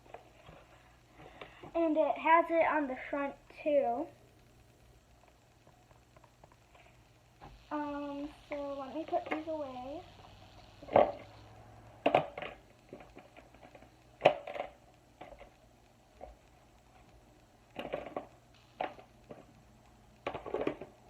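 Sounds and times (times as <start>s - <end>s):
plastic toys and cardboard rustling: 0.0s - 4.1s, 5.6s - 10.0s, 10.8s - 11.3s, 12.0s - 19.6s, 20.2s - 21.0s.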